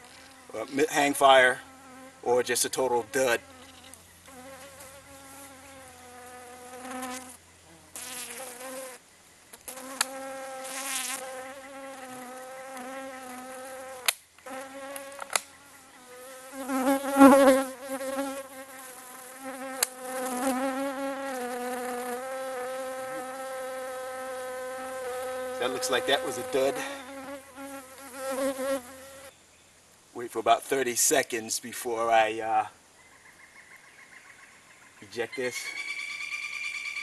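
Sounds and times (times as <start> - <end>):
flying insect buzzing: 0.0 - 2.3, 3.0 - 29.3.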